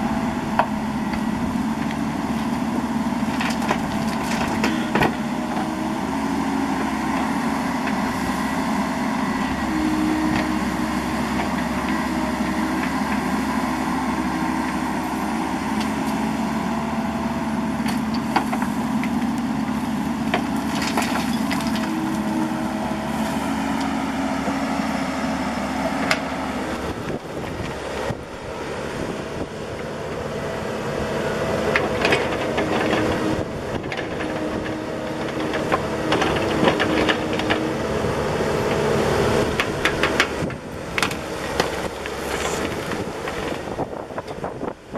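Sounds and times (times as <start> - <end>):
excavator diesel engine running: 0.0 - 44.9.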